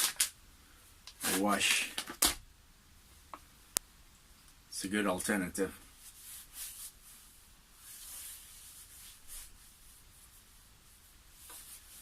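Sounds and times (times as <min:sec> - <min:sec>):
wet wipe rubbing skin: 0:01.2 - 0:01.7, 0:05.9 - 0:12.0.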